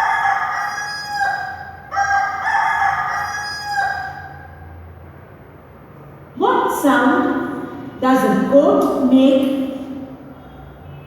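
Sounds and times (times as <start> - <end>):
rooster crowing: 0.0 - 4.7.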